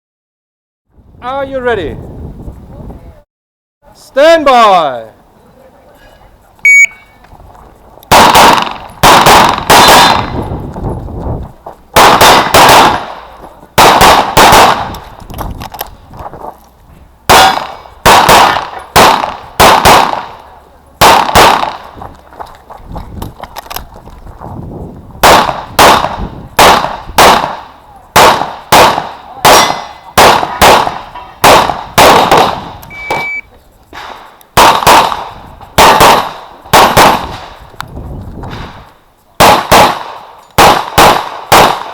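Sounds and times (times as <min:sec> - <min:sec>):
pistol shots with echo: 0:08.1 - 0:10.3, 0:12.0 - 0:13.2, 0:13.8 - 0:14.9, 0:17.3 - 0:20.4, 0:21.0 - 0:21.9, 0:25.2 - 0:33.3, 0:34.6 - 0:37.4, 0:39.4 - 0:41.9.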